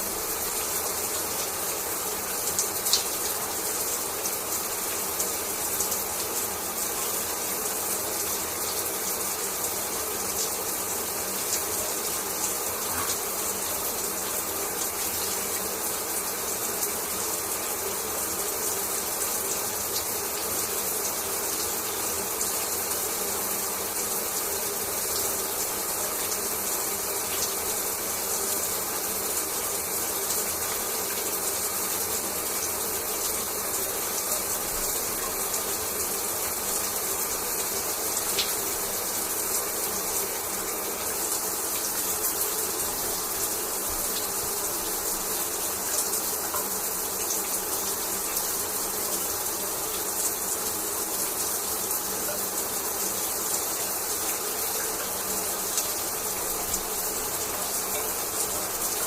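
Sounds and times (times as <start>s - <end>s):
shower water spraying: 0.0s - 59.0s
water drips and spatters: 0.0s - 59.0s.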